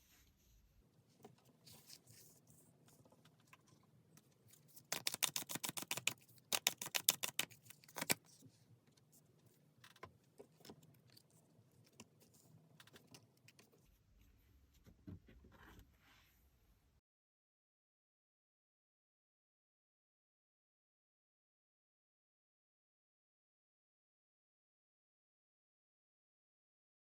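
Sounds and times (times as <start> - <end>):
cards rustling: 4.6 - 8.3
cards shuffling with flicking clicks: 4.8 - 8.3.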